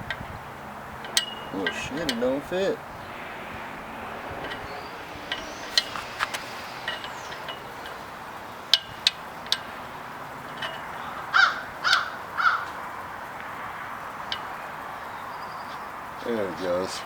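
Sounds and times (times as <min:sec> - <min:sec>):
harsh bird calls: 0:00.4 - 0:17.0
metal parts clicking: 0:04.4 - 0:13.4.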